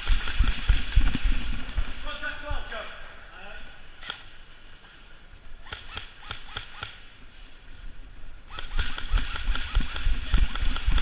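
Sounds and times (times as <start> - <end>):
airsoft guns firing: 0.0 - 1.6, 5.6 - 7.1, 8.5 - 11.0.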